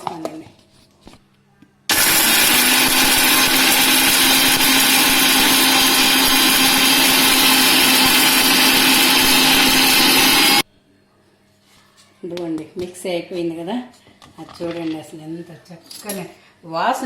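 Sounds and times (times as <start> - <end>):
mixer grinder grinding spices: 1.9 - 10.6.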